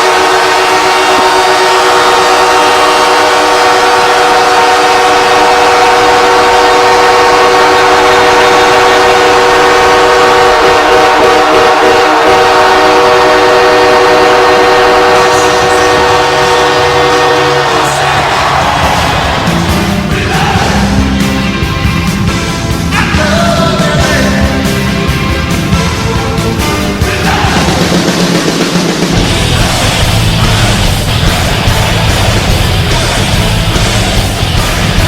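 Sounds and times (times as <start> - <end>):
arena goal horn blast: 0.0 - 20.1.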